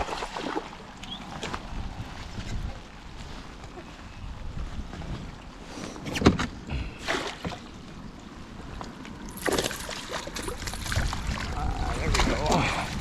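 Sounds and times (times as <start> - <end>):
fish splashing in water: 7.0 - 7.7.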